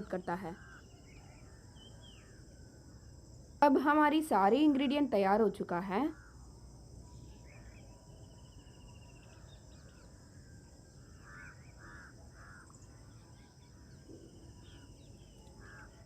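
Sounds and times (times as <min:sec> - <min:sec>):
insect chirring: 0:00.0 - 0:16.0
bird caw-like calls: 0:00.6 - 0:02.4, 0:11.0 - 0:16.0.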